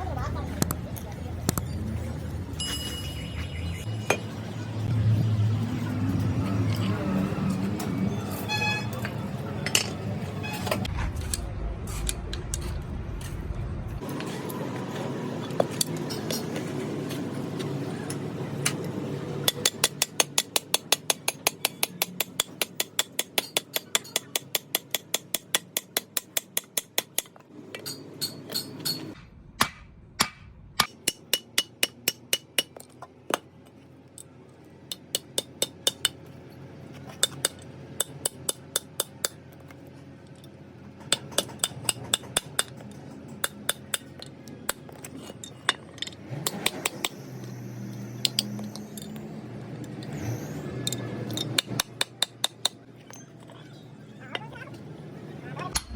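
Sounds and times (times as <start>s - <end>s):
hammer striking metal: 19.4s - 32.8s, 37.2s - 39.4s, 41.0s - 44.9s.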